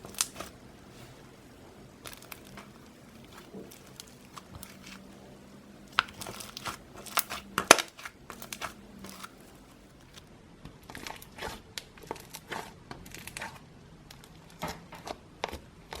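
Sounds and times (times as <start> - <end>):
slime popping and crackling: 0.0 - 10.2.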